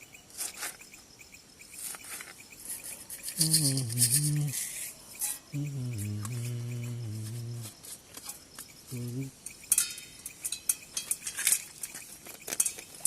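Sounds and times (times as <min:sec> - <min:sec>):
metal cookware clinking: 0:09.7 - 0:13.0.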